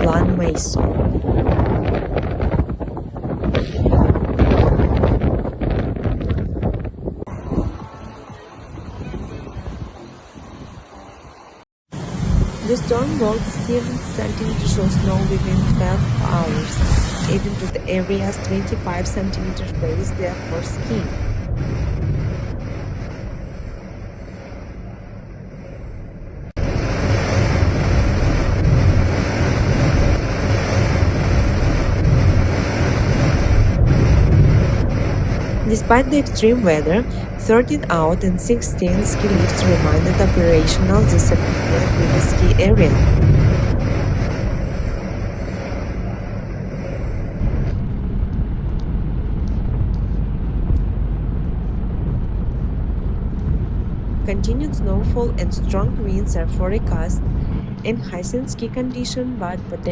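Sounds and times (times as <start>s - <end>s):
blizzard wind buffeting microphone: 0.0s - 59.9s
gusting low rumble: 0.0s - 59.9s.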